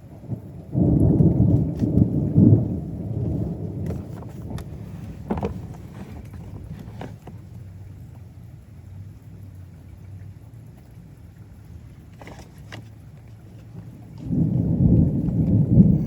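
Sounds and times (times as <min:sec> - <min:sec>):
thunder rumbling: 0:00.0 - 0:07.3, 0:13.8 - 0:16.0.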